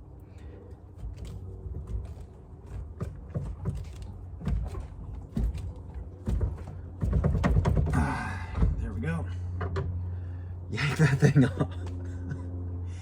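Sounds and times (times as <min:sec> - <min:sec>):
steady low hum: 0:00.0 - 0:13.0
heavy thumps: 0:01.0 - 0:09.0
steering wheel clicks and knocks: 0:01.0 - 0:09.0.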